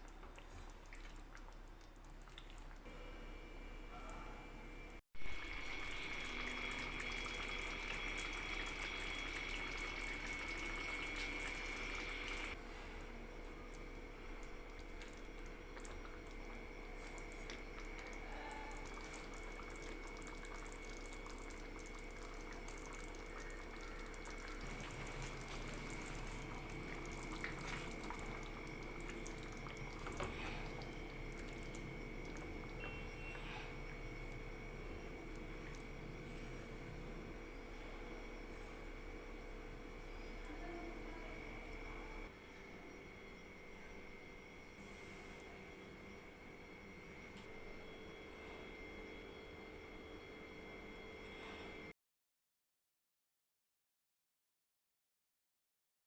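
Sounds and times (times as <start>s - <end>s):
watery bubbling and dripping: 0.0s - 2.9s, 5.3s - 12.6s, 13.6s - 36.8s
faint steady hum: 0.0s - 51.9s.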